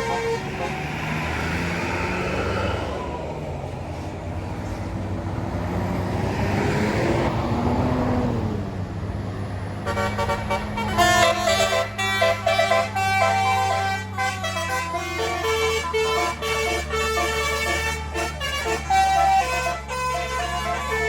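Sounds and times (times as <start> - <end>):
bus multi-tone horn tune: 0.0 - 1.7, 9.7 - 21.0
bus engine droning: 0.0 - 21.0.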